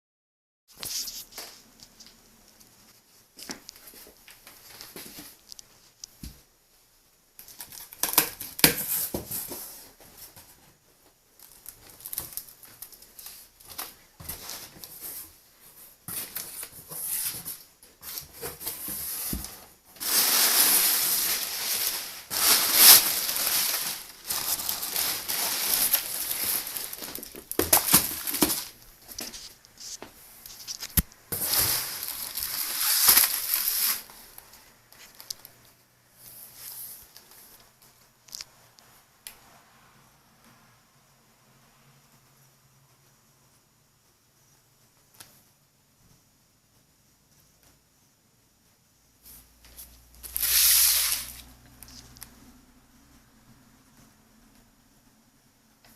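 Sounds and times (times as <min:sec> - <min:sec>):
packaging crinkling and rustling: 0:11.4 - 0:15.3, 0:16.1 - 0:35.5.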